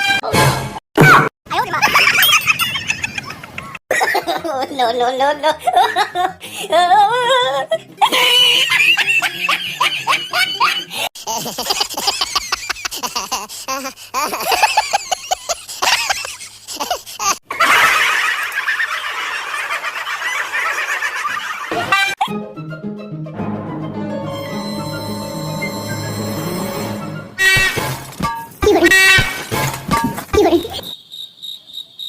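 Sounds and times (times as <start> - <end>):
people laughing and squealing: 1.6 - 4.4, 7.3 - 22.2.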